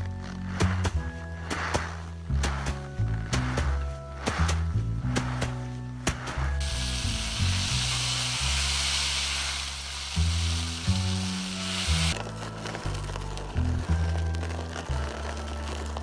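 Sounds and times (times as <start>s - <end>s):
background music with bass: 0.0s - 16.0s
sizzling hiss: 6.6s - 12.2s.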